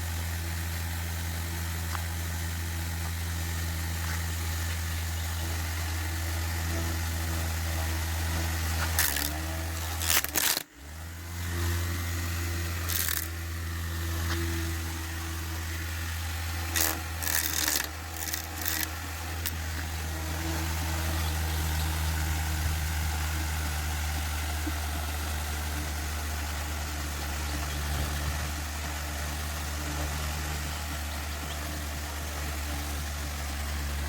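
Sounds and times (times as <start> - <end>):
small electric motor humming: 0.0 - 34.0
rattling noise: 12.8 - 13.5, 16.6 - 21.8.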